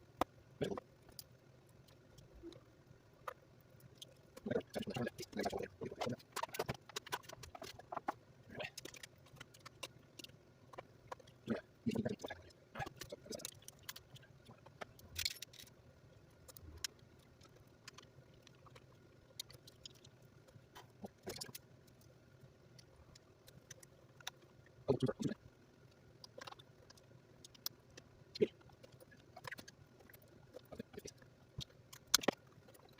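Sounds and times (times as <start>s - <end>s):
tools and car parts clicking: 12.9s - 15.7s, 31.6s - 32.9s.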